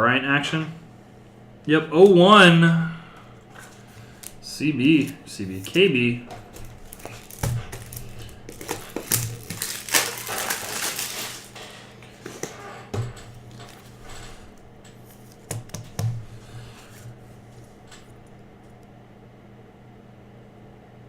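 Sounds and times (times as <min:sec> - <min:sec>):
cards and wrappers rustling: 0:03.5 - 0:18.4.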